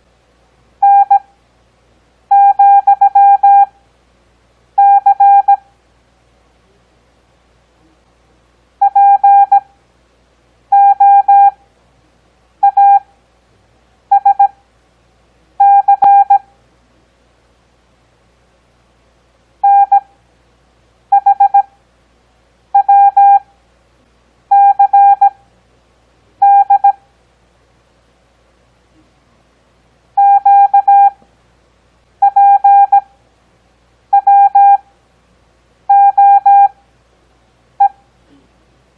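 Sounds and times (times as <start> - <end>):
morse code beeps: 0.8 - 1.2, 2.3 - 3.7, 4.8 - 5.6, 8.8 - 9.6, 10.7 - 11.6, 12.6 - 13.0, 14.1 - 14.5, 15.6 - 16.4, 19.6 - 20.0, 21.1 - 21.7, 22.8 - 23.4, 24.5 - 25.4, 26.4 - 27.0, 30.2 - 31.2, 32.2 - 33.0, 34.1 - 34.8, 35.9 - 36.8.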